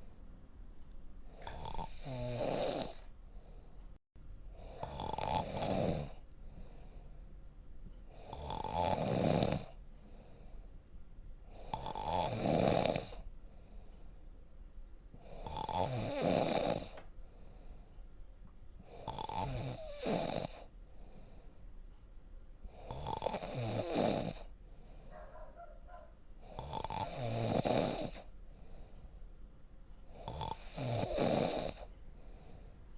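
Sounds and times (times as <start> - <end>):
quiet breathing: 1.2 - 8.5, 9.5 - 12.1, 12.9 - 14.5, 16.8 - 32.9
person snoring: 1.3 - 3.1, 4.6 - 6.2, 8.1 - 9.8, 11.5 - 13.2, 15.2 - 17.0, 18.9 - 20.7, 22.7 - 24.5, 26.4 - 28.3, 30.1 - 31.9.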